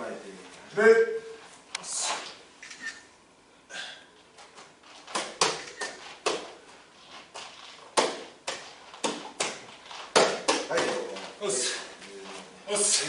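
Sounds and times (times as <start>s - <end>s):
bare feet stepping on floor: 4.4s - 11.4s.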